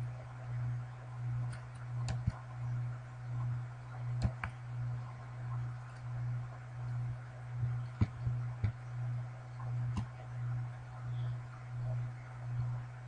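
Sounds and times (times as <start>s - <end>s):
low steady hum: 0.0s - 13.0s
computer mouse clicking: 1.5s - 2.4s, 4.2s - 4.6s.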